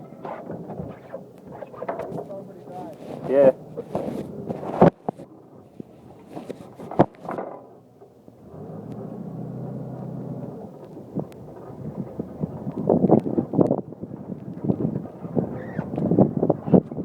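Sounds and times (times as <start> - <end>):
wind rumbling on microphone: 0.0 - 17.0
microphone handling noise: 0.2 - 7.6.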